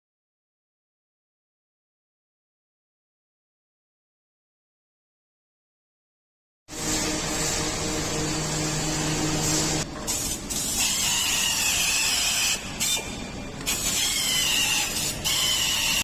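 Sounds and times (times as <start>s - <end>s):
compressed air hissing in spurts: 6.7s - 16.0s.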